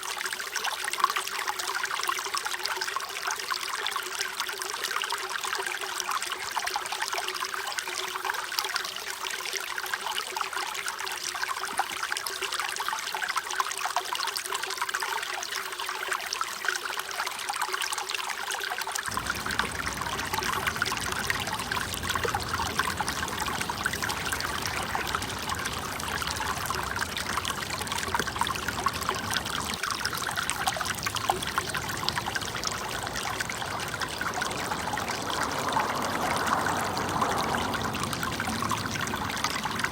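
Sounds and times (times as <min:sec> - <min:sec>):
water trickling and splashing: 0:00.0 - 0:39.9
low water rush: 0:19.1 - 0:39.9.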